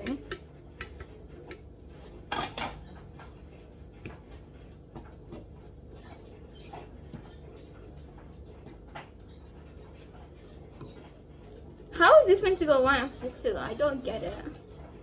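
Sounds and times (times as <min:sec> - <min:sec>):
utensil scraping a mixing bowl: 0:14.0 - 0:14.6.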